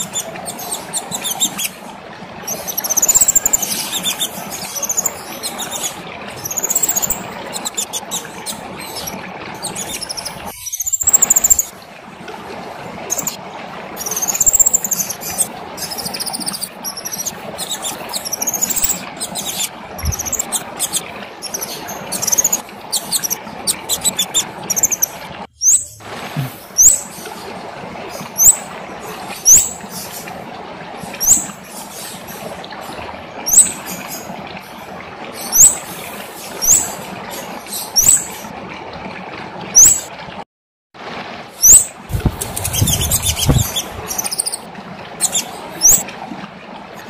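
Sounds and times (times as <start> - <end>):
songbird chattering twitter: 2.5 - 9.1, 9.7 - 11.7, 13.1 - 13.4, 14.0 - 25.9, 41.6 - 44.6
sharp rising bird chirps: 14.0 - 26.0, 41.6 - 44.6.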